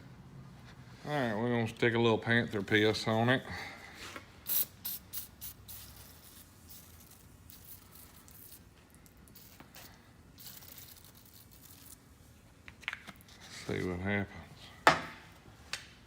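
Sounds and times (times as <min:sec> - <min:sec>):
aerosol can spraying: 0:04.5 - 0:08.6, 0:09.3 - 0:12.0.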